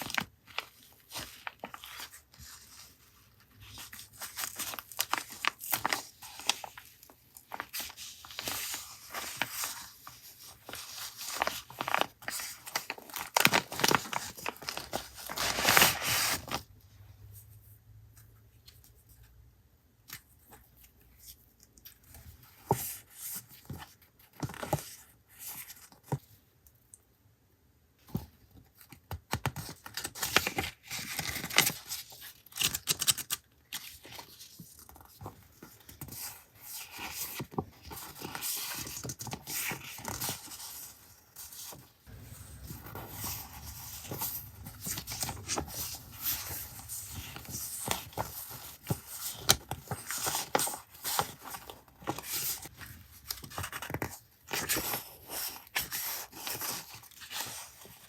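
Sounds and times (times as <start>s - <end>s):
paper packaging tearing and crinkling: 10.6s - 16.6s, 42.1s - 52.4s.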